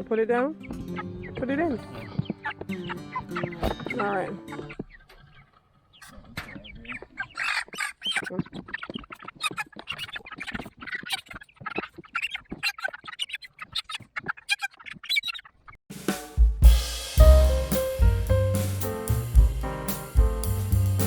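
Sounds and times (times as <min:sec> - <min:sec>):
chickens peeping and squawking: 0:07.2 - 0:15.5.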